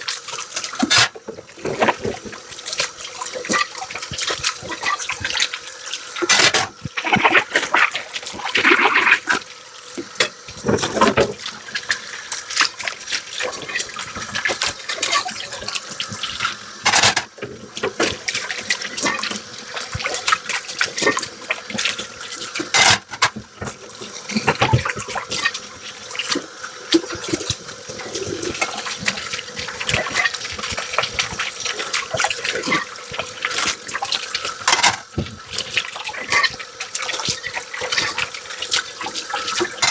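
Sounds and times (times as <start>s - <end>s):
tap water splashing into sink: 0.0s - 39.9s
dishes clinking: 16.9s - 17.3s, 22.7s - 23.4s, 34.6s - 35.1s.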